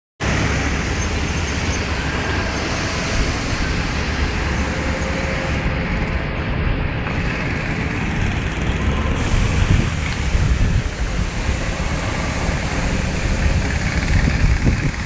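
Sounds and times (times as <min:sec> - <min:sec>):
heavy vehicle traffic rumble: 0:00.2 - 0:15.0.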